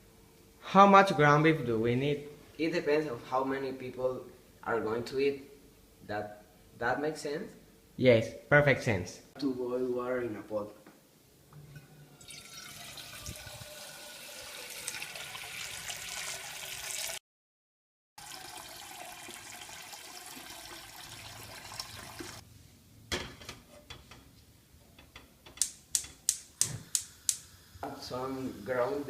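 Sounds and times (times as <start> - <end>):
water running from tap into pot: 12.2 - 17.2, 18.2 - 22.4.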